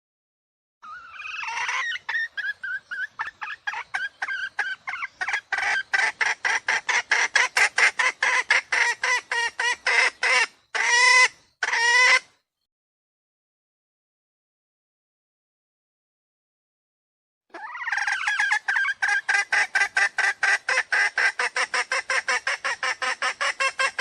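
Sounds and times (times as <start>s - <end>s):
junglefowl clucking call: 0.8s - 12.3s, 17.5s - 24.0s
long drawn-out bird calls: 0.8s - 12.6s, 17.5s - 24.0s.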